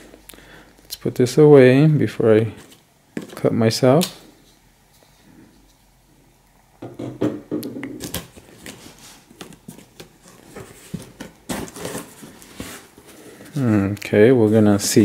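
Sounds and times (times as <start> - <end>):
cardboard box flaps rustling: 8.6 - 13.2.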